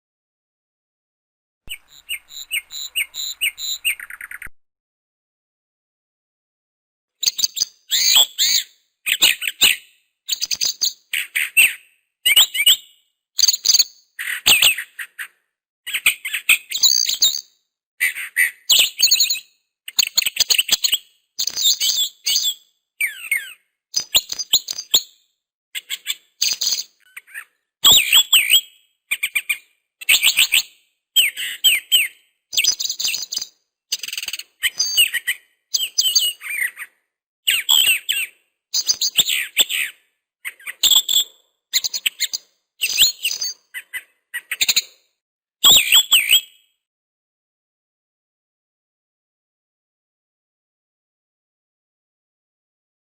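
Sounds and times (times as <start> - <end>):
bird chirping: 1.7 - 4.6, 7.2 - 15.3, 15.9 - 17.6, 18.2 - 45.0, 45.6 - 46.6.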